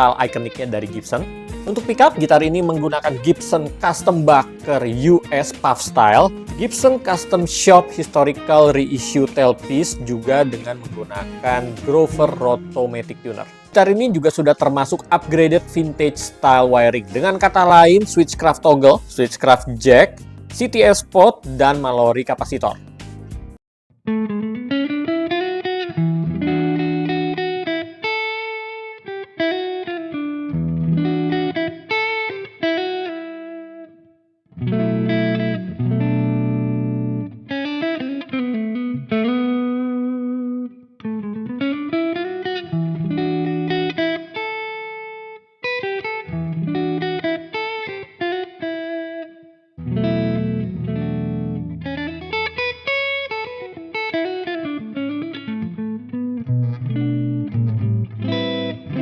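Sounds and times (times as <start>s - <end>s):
electric guitar through amplifier: 24.1s - 33.9s, 34.6s - 59.0s.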